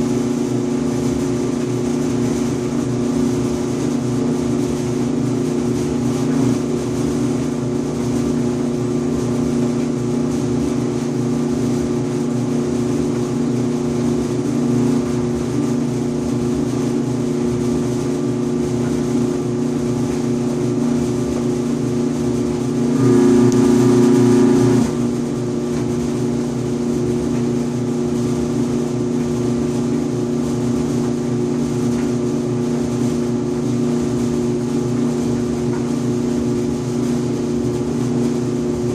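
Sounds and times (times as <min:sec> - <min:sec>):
clothes dryer humming: 0:00.0 - 0:38.9
loud buzz: 0:22.9 - 0:25.2.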